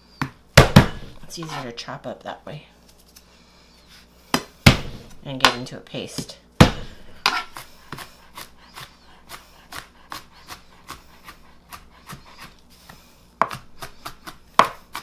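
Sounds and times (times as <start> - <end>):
knife chopping on cutting board: 0.2 - 1.6, 4.3 - 5.6, 6.6 - 12.6, 13.4 - 15.0.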